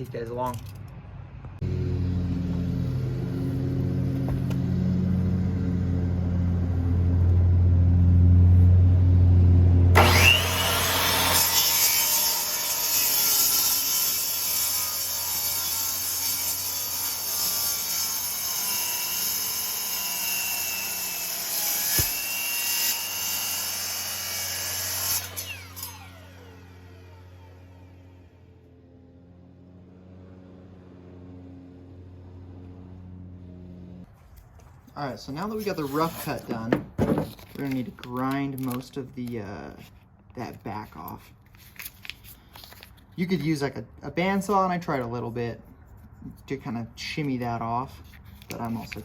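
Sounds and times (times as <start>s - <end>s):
power saw motor humming: 9.9s - 28.5s
saw blade cutting antler: 10.0s - 27.9s, 35.4s - 36.8s.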